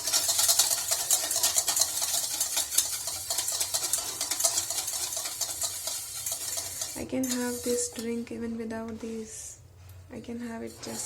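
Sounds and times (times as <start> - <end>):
hand whisk scraping container: 0.0 - 8.1, 10.7 - 11.0.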